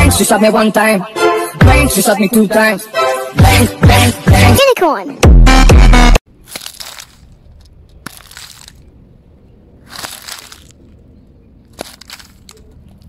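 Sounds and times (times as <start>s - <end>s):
fidget toy crunching: 6.3s - 9.0s, 9.8s - 11.0s, 11.6s - 13.0s.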